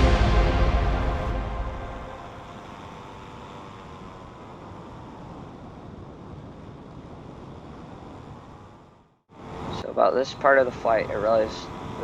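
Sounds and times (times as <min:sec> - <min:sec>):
paramotor engine droning: 0:00.0 - 0:12.0
wind rushing over microphone: 0:02.2 - 0:08.9.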